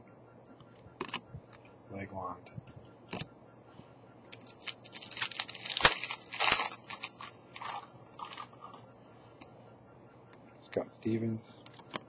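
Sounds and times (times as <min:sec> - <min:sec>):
foil wrapper crinkling: 0:04.3 - 0:08.7
wrapper snapping: 0:04.4 - 0:08.4.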